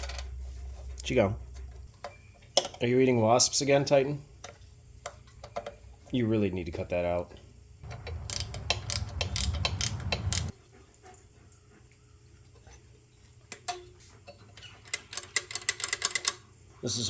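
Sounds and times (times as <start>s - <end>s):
dog clicks over low rumble: 7.8s - 10.5s.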